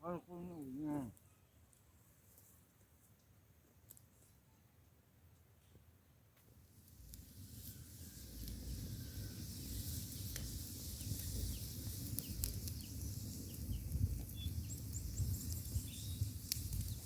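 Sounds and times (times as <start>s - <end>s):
small birds chirping: 7.1s - 17.0s.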